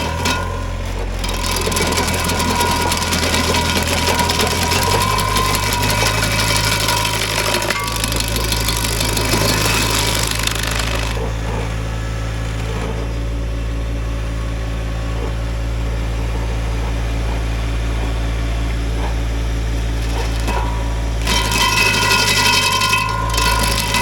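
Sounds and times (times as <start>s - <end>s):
wood chipping: 0.0s - 11.8s, 19.9s - 24.0s
grinder wheel grinding wood: 0.0s - 24.0s
tractor engine running: 0.0s - 24.0s.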